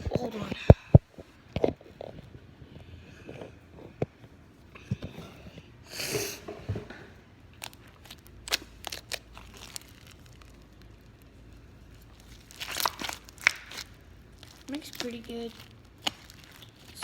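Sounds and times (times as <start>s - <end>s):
slime beads crackling and popping: 7.5s - 17.0s.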